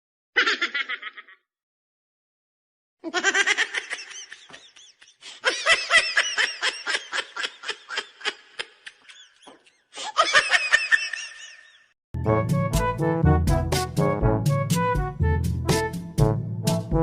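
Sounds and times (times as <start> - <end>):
high-pitched giggling: 0.4 - 1.4, 3.0 - 11.8.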